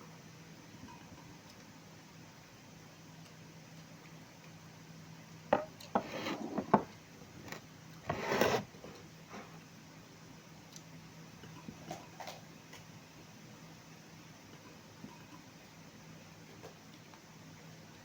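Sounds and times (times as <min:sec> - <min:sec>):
tableware clinking: 0:05.6 - 0:06.9
tableware scraping: 0:05.6 - 0:06.9, 0:07.5 - 0:08.7.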